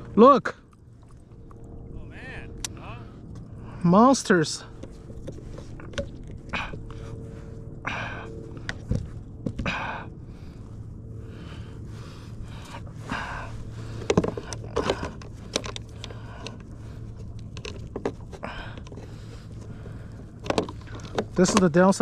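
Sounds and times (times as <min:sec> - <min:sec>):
low hum: 0:00.0 - 0:22.0
breathing close to microphone: 0:09.6 - 0:17.6, 0:18.2 - 0:21.4
small clicks and knocks: 0:14.0 - 0:22.0.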